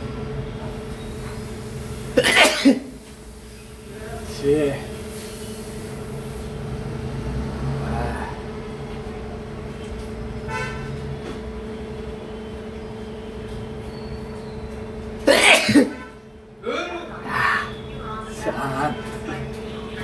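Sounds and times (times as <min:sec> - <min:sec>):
low electrical hum: 0:00.0 - 0:20.0
man sneezing: 0:02.2 - 0:02.9, 0:15.2 - 0:17.0.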